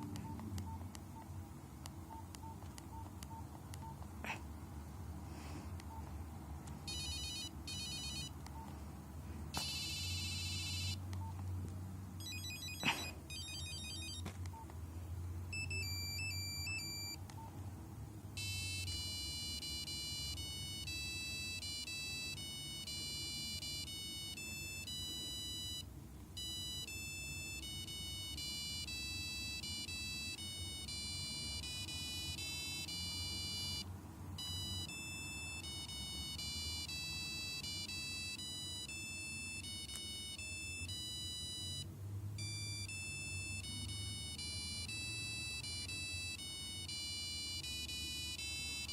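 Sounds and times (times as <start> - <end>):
beeping melody: 6.8 - 8.7, 9.6 - 11.4, 12.2 - 14.7, 15.5 - 17.6, 18.4 - 48.9
mobile phone ringtones: 6.8 - 8.7, 9.6 - 11.4, 12.2 - 14.7, 15.5 - 17.6, 18.4 - 48.9.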